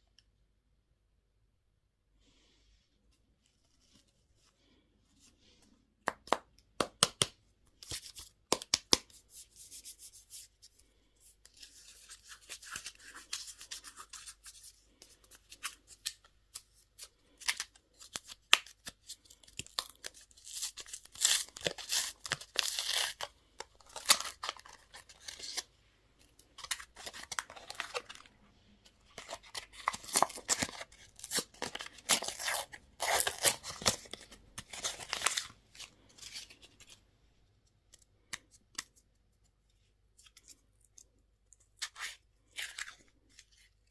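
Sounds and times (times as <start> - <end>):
candy wrappers crinkling: 11.6 - 28.4, 29.0 - 37.0.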